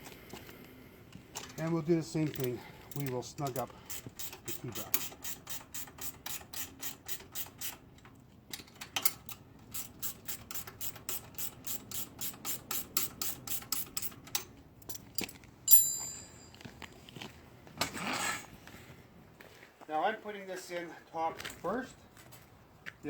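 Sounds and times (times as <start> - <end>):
ratcheting wrench clicking: 2.3 - 7.8, 8.6 - 15.0.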